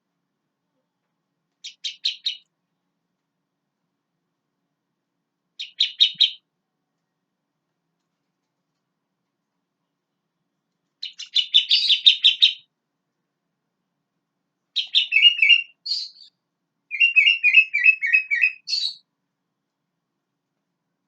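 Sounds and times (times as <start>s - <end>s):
bird singing: 1.6s - 2.4s, 5.6s - 6.4s, 11.0s - 12.7s, 14.8s - 19.0s.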